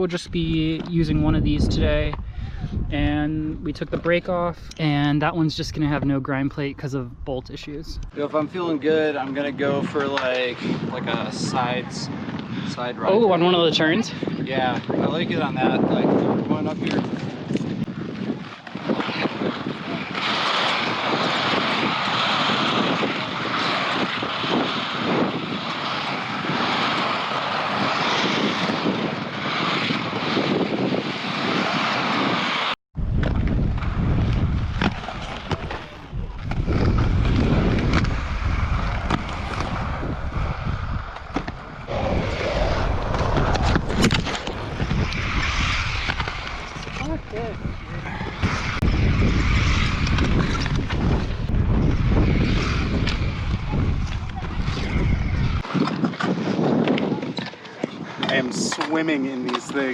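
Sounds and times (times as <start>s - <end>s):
wind on microphone: 0.0s - 59.9s
inline skate wheels rolling: 16.9s - 59.9s.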